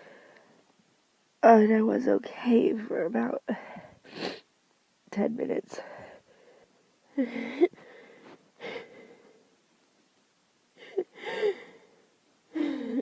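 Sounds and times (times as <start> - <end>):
woman gasping breathily: 5.8 - 9.4, 10.8 - 13.0.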